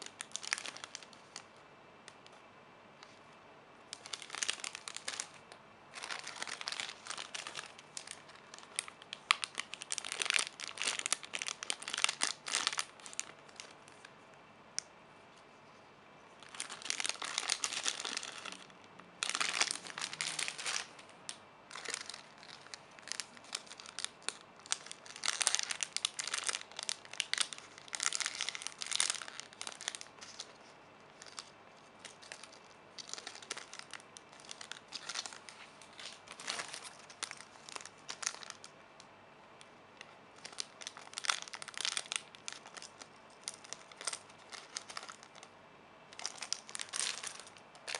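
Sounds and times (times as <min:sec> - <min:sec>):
plastic packaging crinkling: 0:00.0 - 0:01.5, 0:03.9 - 0:14.1, 0:16.4 - 0:38.7, 0:40.0 - 0:45.5, 0:46.1 - 0:47.9.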